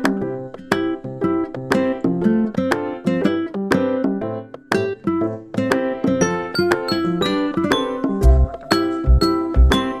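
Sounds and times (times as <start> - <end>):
bright keyboard notes: 0.0 - 10.0.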